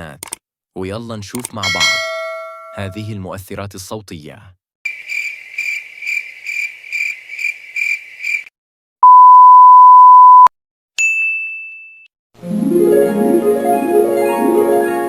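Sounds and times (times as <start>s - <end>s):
high ding: 1.6s - 3.1s, 11.0s - 12.1s
censor bleep: 9.0s - 10.5s.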